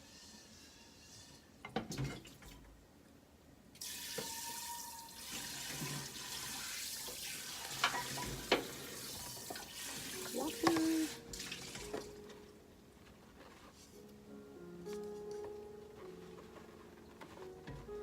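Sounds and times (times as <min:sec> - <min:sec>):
water running into sink: 0:03.8 - 0:12.1.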